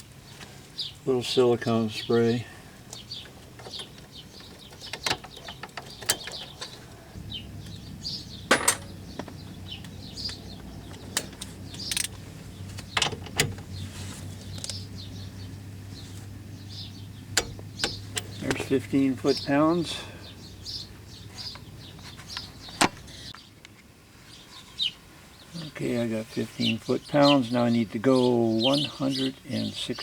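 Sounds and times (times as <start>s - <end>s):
birds chirping: 0.0s - 30.0s
low steady hum: 1.0s - 23.3s.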